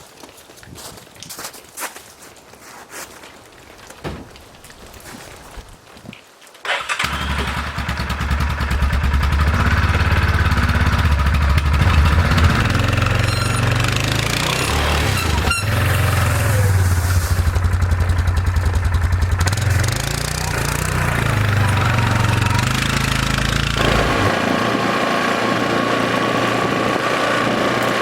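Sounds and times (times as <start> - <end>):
atv engine starting and running: 6.7 - 28.0.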